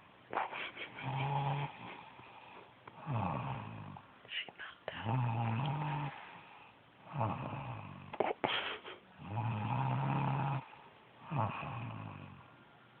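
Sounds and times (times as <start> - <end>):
woman snoring: 0.9 - 2.2, 3.0 - 4.0, 4.9 - 8.2, 9.2 - 12.5.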